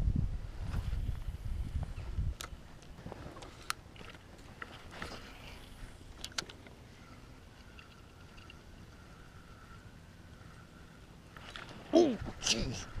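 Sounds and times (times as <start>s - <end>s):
fishing tackle clicks and knocks: 6.2s - 6.8s, 7.6s - 8.6s
faint wavering tone: 6.9s - 11.1s.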